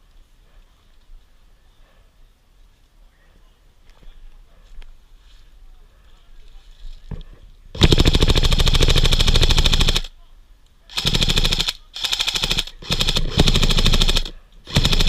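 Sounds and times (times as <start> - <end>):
airsoft rifle firing bursts: 7.8 - 10.1, 10.9 - 15.0.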